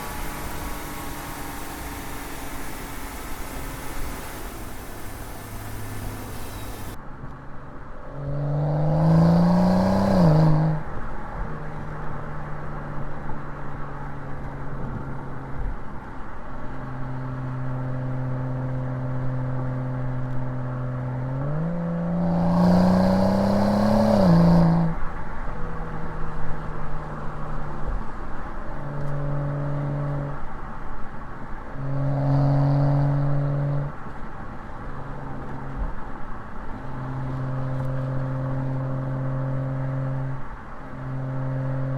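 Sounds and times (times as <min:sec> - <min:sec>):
car engine accelerating hard: 0:00.0 - 0:07.0, 0:08.3 - 0:11.1, 0:17.4 - 0:30.5.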